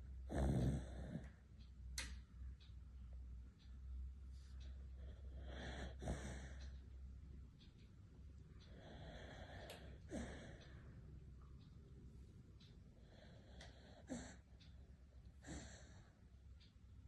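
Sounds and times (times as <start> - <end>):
dog snoring: 0.2 - 1.4, 5.0 - 6.6, 8.7 - 10.6, 13.0 - 14.4, 15.4 - 16.0.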